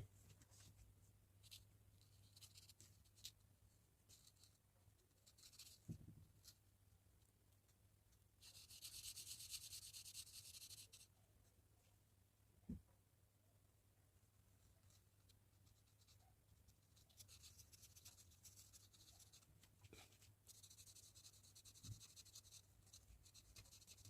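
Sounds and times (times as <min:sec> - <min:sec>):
pen scratching on paper: 0:20.5 - 0:24.0.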